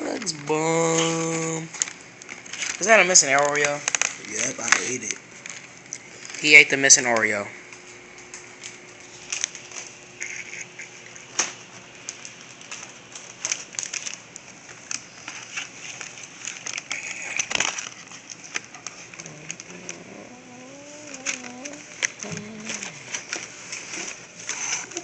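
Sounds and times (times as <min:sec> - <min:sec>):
packaging crackling and rustling: 0:00.0 - 0:25.0.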